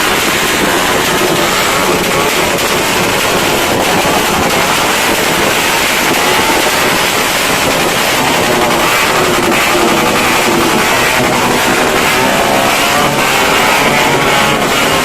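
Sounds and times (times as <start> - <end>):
distant firecrackers and fireworks: 0.0 - 15.0.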